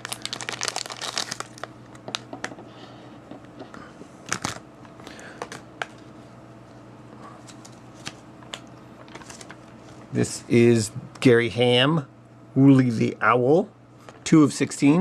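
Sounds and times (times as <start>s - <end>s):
wrapper crinkling and tearing: 0.0s - 2.3s, 4.3s - 4.6s.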